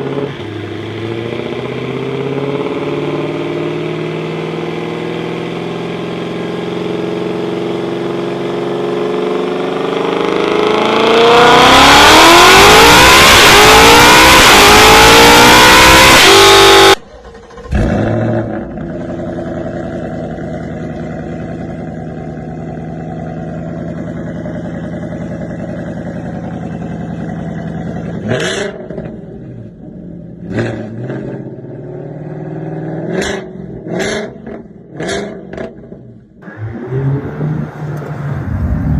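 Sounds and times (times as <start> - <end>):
car engine revving: 0.0 - 38.9.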